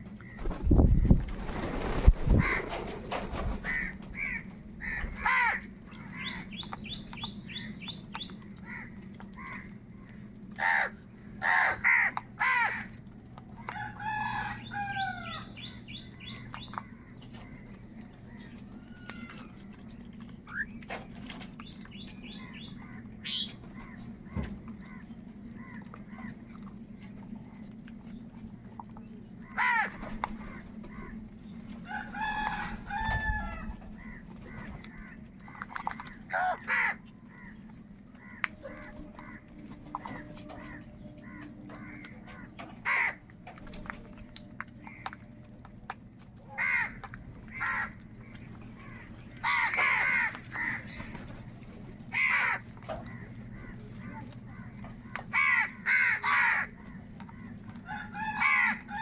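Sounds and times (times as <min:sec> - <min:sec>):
steady low hum: 0:00.0 - 0:59.0
crows cawing: 0:02.4 - 0:06.5, 0:08.6 - 0:09.8, 0:10.6 - 0:13.0, 0:29.4 - 0:31.2, 0:31.9 - 0:37.6, 0:38.2 - 0:43.3, 0:46.5 - 0:51.2, 0:52.1 - 0:59.0.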